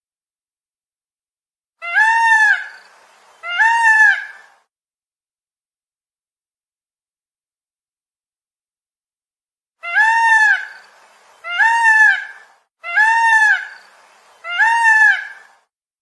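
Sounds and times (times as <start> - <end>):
peacock calling: 1.8 - 4.6, 9.8 - 15.6.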